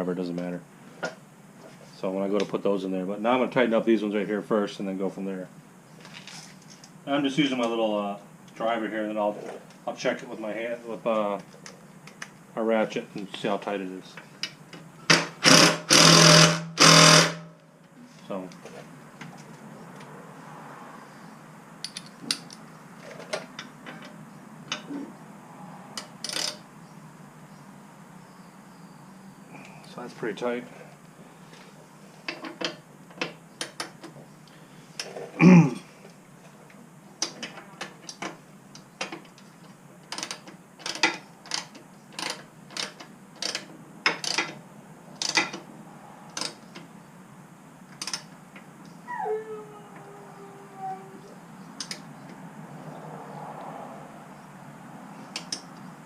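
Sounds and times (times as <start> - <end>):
rapid ratchet clicking rasp: 15.2 - 17.4
hand ratchet clicking: 40.1 - 44.5.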